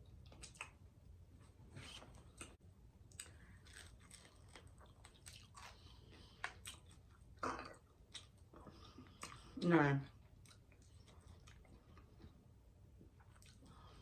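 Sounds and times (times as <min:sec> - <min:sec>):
chewing crunches: 0:02.2 - 0:09.5, 0:13.2 - 0:13.9.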